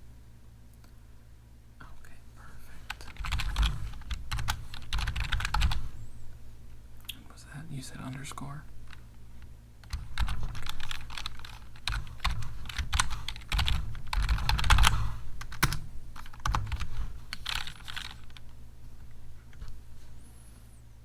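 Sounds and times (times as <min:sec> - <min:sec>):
computer keyboard typing: 0:02.9 - 0:05.9, 0:09.8 - 0:18.5.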